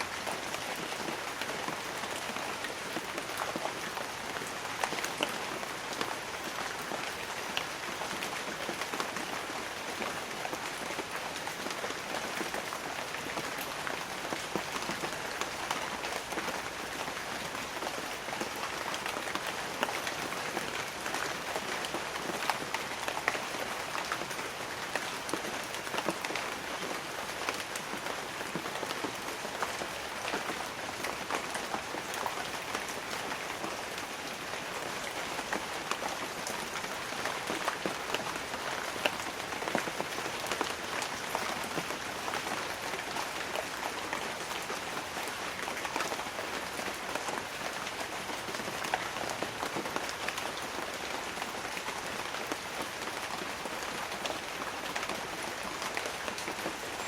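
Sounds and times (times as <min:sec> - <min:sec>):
rain on leaves: 0:00.0 - 0:57.0
raindrops striking leaves: 0:00.0 - 0:57.0.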